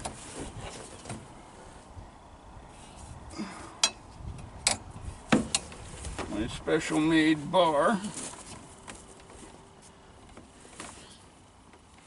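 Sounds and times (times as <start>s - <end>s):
light metallic clinks and knocks: 3.8s - 5.8s.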